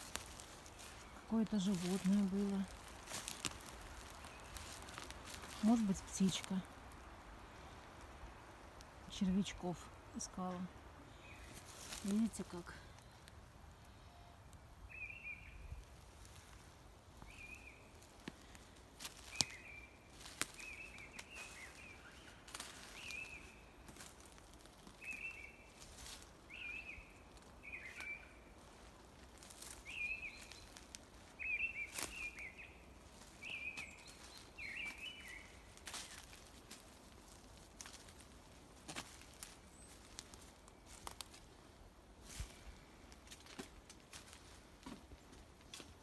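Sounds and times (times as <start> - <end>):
twigs snapping underfoot: 0.0 - 9.0, 17.2 - 26.3, 27.3 - 41.6, 42.2 - 46.0
small bird calling: 17.2 - 24.1, 24.9 - 36.5.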